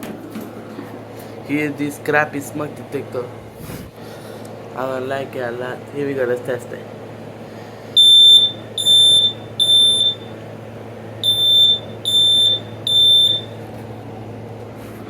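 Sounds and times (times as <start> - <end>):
smoke detector beeps: 8.0 - 10.4, 11.2 - 13.6.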